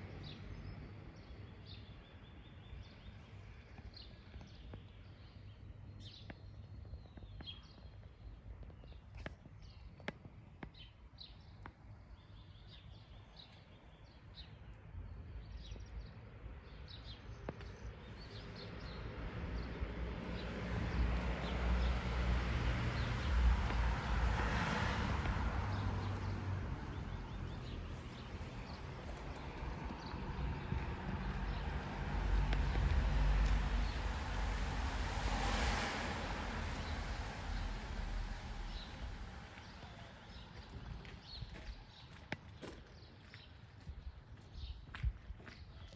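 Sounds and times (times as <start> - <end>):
low rushing rumble: 20.5 - 41.0
birds chirping: 24.6 - 35.3.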